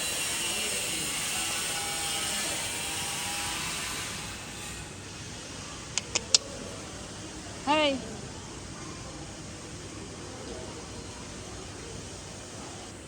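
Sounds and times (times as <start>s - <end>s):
sharp clicks: 5.9s - 6.4s.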